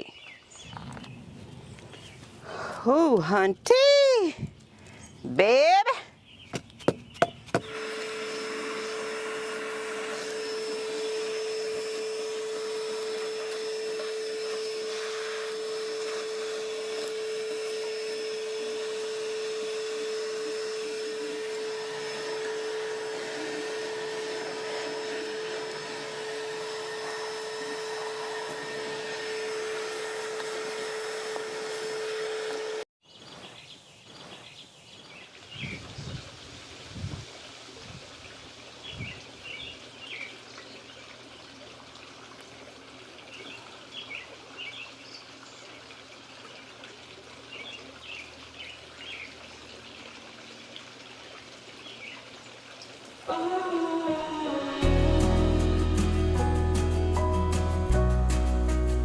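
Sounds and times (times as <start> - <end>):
outdoor background: 0.0 - 59.0
small electric motor whining: 7.6 - 32.9.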